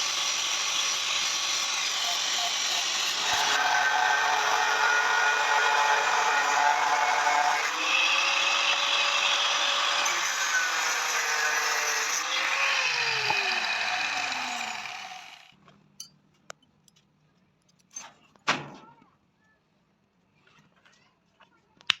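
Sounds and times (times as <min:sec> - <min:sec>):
power tool grinding metal: 0:00.0 - 0:15.5.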